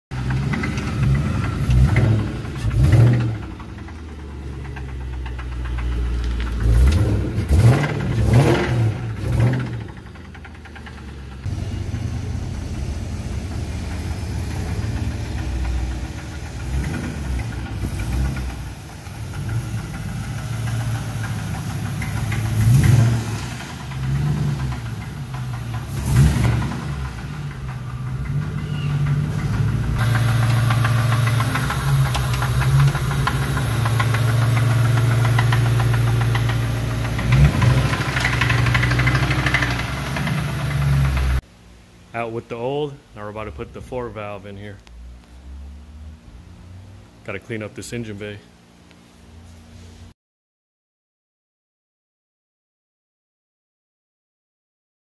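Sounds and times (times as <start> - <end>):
engine with rod knock revving: 0.1 - 41.4.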